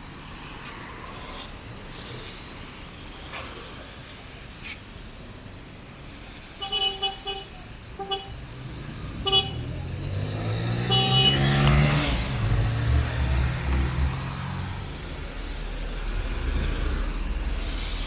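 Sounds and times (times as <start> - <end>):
vehicle horn toots: 9.2 - 9.8, 10.7 - 11.7.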